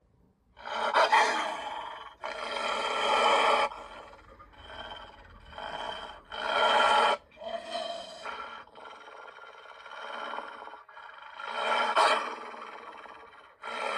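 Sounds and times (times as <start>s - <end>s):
wolf growls and roars: 0.6s - 13.9s.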